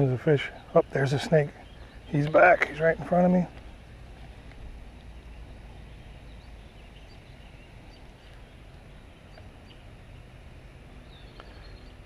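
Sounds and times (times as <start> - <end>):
steady low rumble: 0.0 - 12.0
faint bird chirps: 0.3 - 3.8, 11.0 - 12.0.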